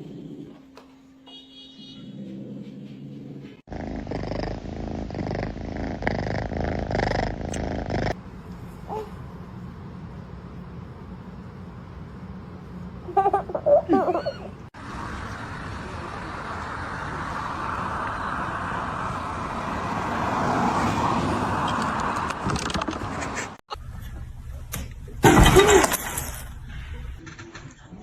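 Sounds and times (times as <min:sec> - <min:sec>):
car road and engine noise: 0:14.7 - 0:23.6.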